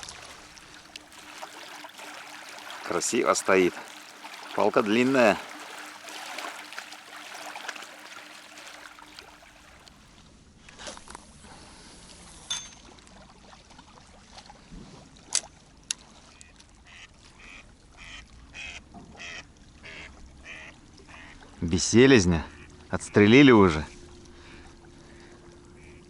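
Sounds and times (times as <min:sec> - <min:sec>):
hiss of wind and water: 0:00.0 - 0:10.1.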